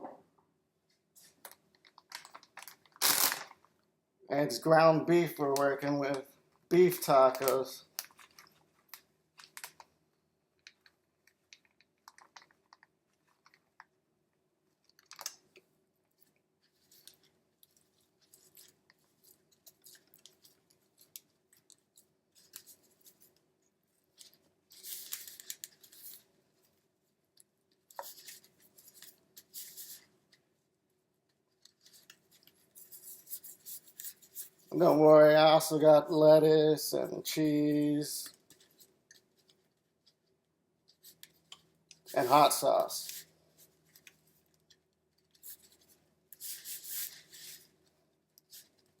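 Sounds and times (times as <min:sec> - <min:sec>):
rustling and scraping: 0:16.1 - 0:26.9, 0:27.8 - 0:30.4, 0:38.2 - 0:49.0.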